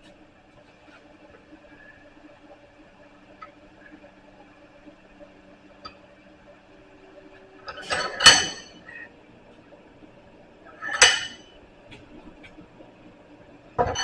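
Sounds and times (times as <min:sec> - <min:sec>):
metal clanks ringing: 0:07.7 - 0:08.8, 0:10.8 - 0:11.4.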